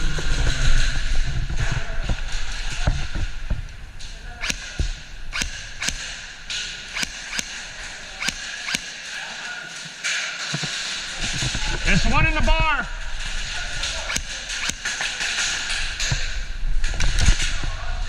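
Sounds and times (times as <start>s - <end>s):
airsoft gun sharp snaps: 4.4s - 9.0s, 14.1s - 15.2s.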